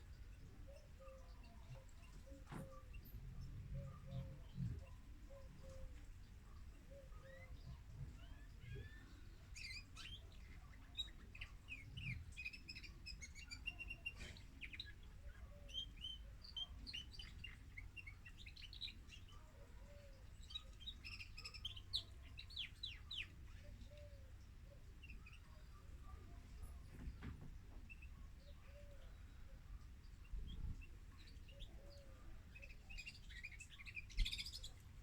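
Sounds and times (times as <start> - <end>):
canary singing: 6.8 - 25.9, 29.9 - 35.0.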